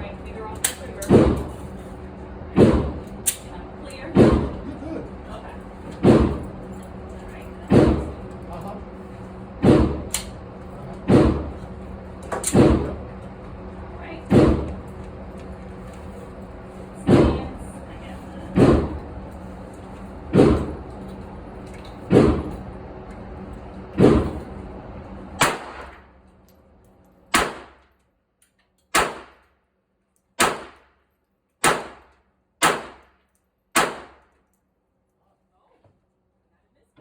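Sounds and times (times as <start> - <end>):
steady background hum: 0.0 - 37.0
pistol shots: 25.4 - 26.0, 27.3 - 27.8, 28.9 - 29.5, 30.4 - 30.9, 31.6 - 33.1, 33.8 - 34.3.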